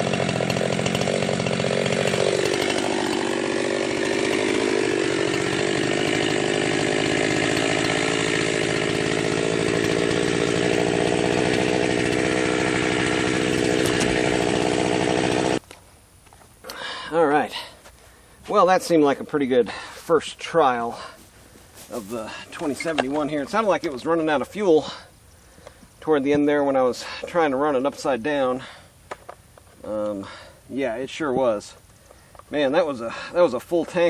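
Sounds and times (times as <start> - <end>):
chainsaw at full throttle: 0.0 - 15.6, 21.8 - 25.1, 32.8 - 34.0.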